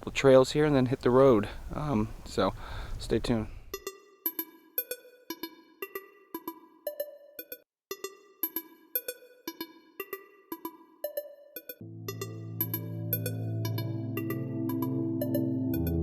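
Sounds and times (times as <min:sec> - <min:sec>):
light electronic plucked tune: 0:11.0 - 0:16.0.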